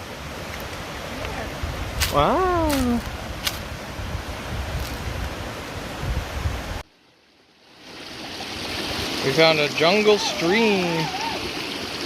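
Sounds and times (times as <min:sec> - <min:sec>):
running water: 0:00.0 - 0:12.0
wind buffeting microphone: 0:01.1 - 0:06.8
waterfall rushing: 0:07.8 - 0:12.0.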